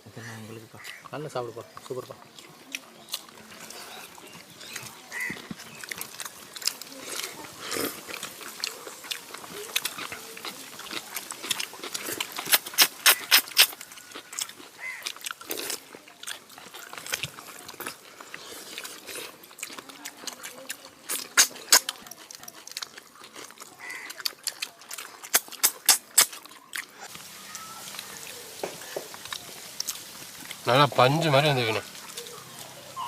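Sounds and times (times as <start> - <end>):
lip-smacking and chewing: 1.7 - 30.6, 31.8 - 33.0.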